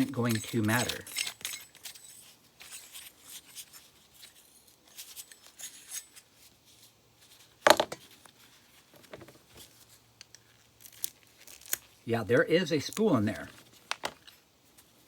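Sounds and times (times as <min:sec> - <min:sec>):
hand tools clicking and scraping metal: 0:00.0 - 0:06.3.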